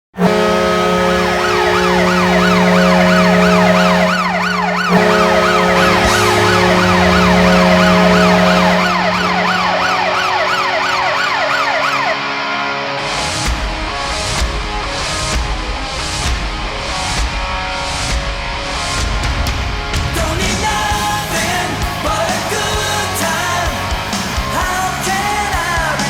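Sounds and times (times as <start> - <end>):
siren wailing rapidly: 0.2 - 12.4
deep horn blast: 0.2 - 16.3.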